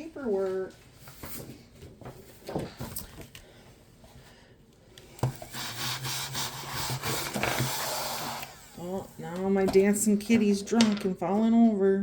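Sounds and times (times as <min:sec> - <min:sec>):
toy motor whirring with rasping buzz: 0:05.4 - 0:08.9.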